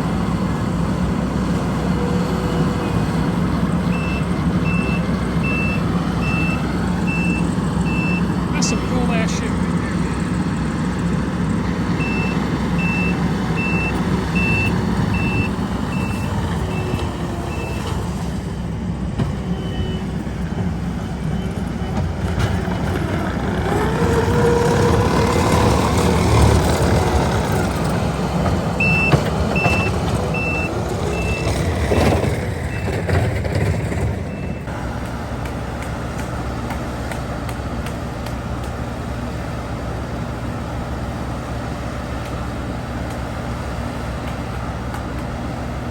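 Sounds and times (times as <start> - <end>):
diesel construction machine running: 0.0 - 45.9
backup alarm beeping: 3.9 - 10.0, 11.9 - 17.8, 28.8 - 31.6.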